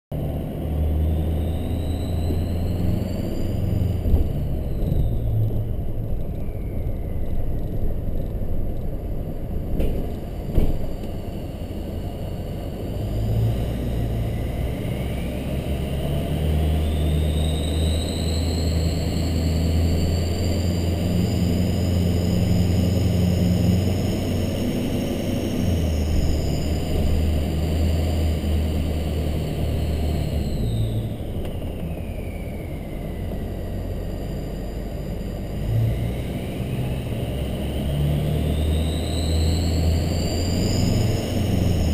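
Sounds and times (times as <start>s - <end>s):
diesel engine rumbling: 0.1s - 41.9s
turbocharger whistling: 0.5s - 8.4s, 10.3s - 41.9s.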